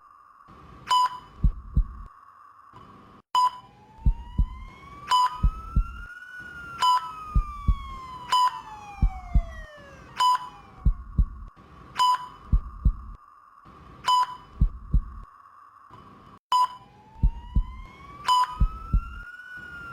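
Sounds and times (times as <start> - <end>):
steady hum: 0.5 - 2.1, 3.9 - 15.3, 17.2 - 19.3
patient monitor beeps: 0.9 - 2.1, 3.4 - 6.1, 6.8 - 11.4, 12.0 - 13.2, 14.0 - 15.3, 16.5 - 19.2
heartbeat thumps: 1.3 - 2.1, 4.0 - 4.7, 5.3 - 6.1, 7.3 - 8.1, 8.8 - 9.8, 10.7 - 11.5, 12.4 - 13.2, 14.4 - 15.3, 17.2 - 19.2
siren wailing: 3.7 - 11.5, 16.8 - 19.9.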